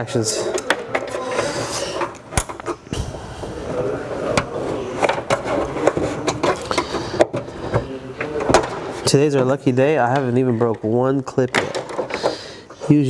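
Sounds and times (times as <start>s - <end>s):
low handling rumble: 2.9s - 6.4s.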